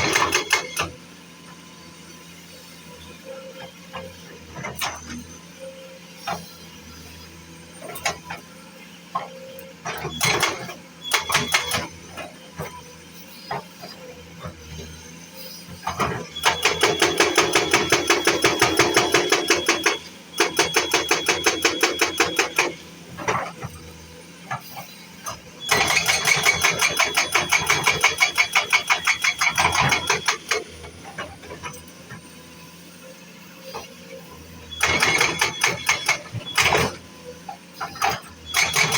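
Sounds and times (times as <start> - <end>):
machine hammering rapidly: 16.5 - 22.7, 38.6 - 38.9.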